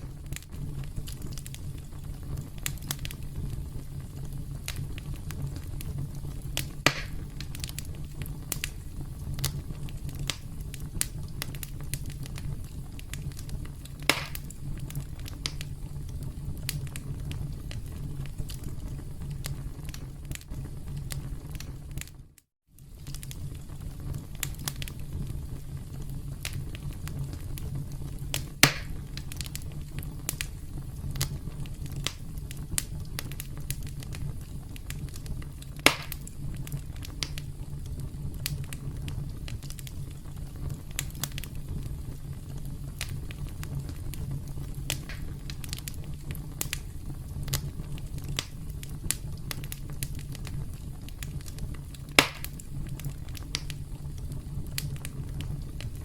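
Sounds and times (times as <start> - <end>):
campfire crackling: 0.0 - 56.0
loud fire pops: 0.0 - 56.0.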